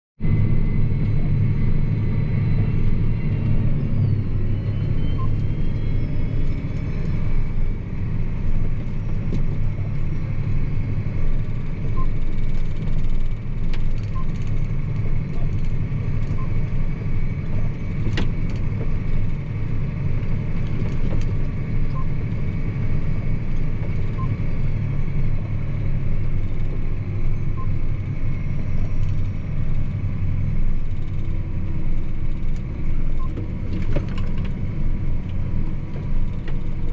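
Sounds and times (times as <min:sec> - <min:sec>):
tractor diesel engine running: 0:00.2 - 0:36.9.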